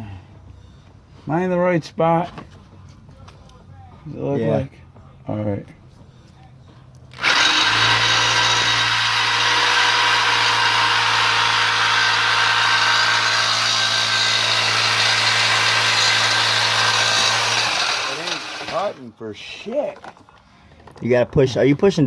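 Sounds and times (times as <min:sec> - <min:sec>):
reciprocating saw cutting metal pipe: 0:07.1 - 0:19.0.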